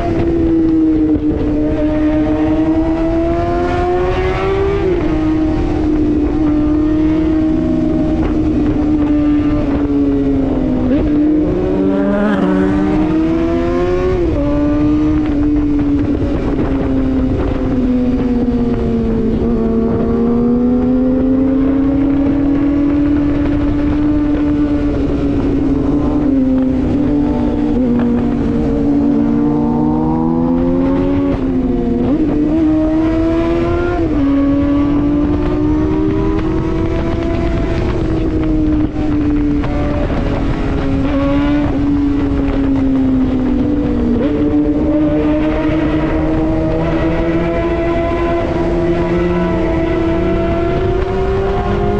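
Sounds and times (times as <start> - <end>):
motorcycle engine revving: 0.0 - 51.9.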